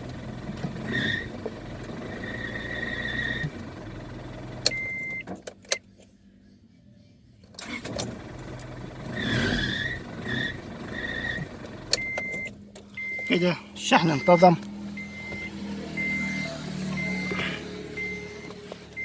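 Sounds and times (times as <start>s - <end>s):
car engine running: 0.0s - 5.6s, 7.6s - 19.0s
short high beeps: 12.0s - 18.5s.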